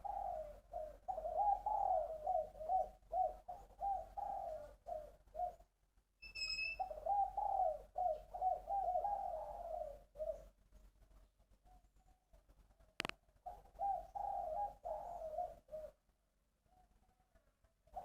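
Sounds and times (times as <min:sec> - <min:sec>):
dove cooing: 0:00.0 - 0:05.8, 0:06.7 - 0:10.6, 0:11.6 - 0:18.0
brief high chirp: 0:06.2 - 0:06.8.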